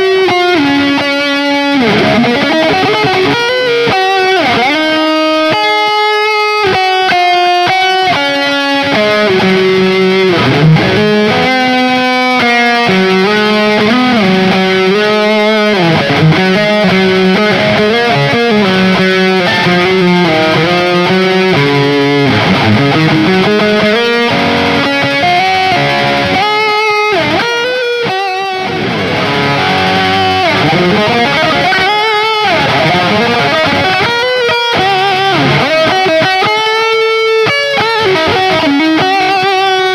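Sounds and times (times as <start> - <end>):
electric guitar through amplifier: 0.0 - 39.9.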